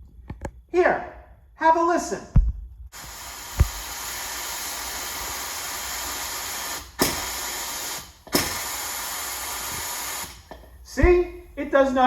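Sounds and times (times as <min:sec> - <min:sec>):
air hammer hissing compressed air: 0:02.9 - 0:11.7.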